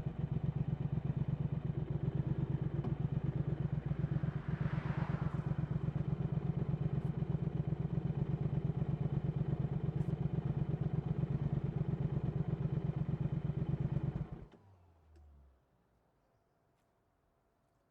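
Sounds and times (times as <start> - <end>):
motorcycle engine idling: 0.0 - 3.8, 6.5 - 14.2.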